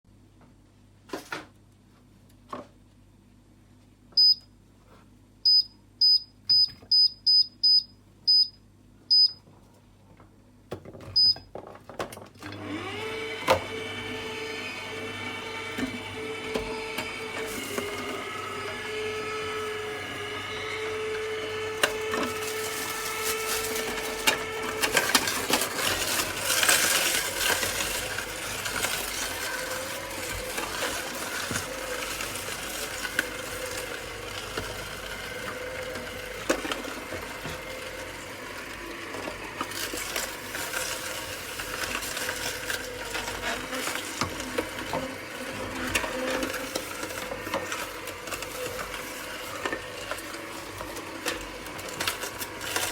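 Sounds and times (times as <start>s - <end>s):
juicer motor hum: 12.4s - 52.9s.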